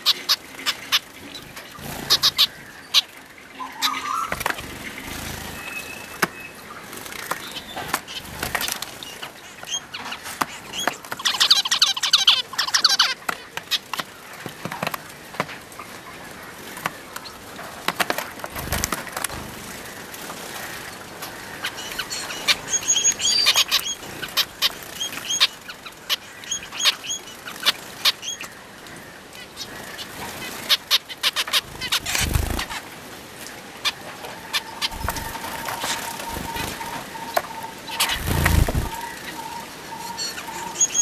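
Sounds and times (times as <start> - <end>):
finches chirping: 0.0 - 13.2, 19.7 - 28.5, 30.7 - 32.8, 33.8 - 41.0
wings fluttering: 0.1 - 26.2, 30.1 - 33.1, 33.8 - 39.6.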